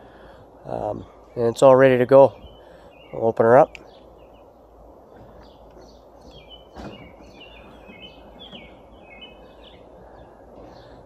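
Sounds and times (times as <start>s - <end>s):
outdoor background noise: 0.0s - 11.0s
small bird chirping: 2.3s - 11.0s.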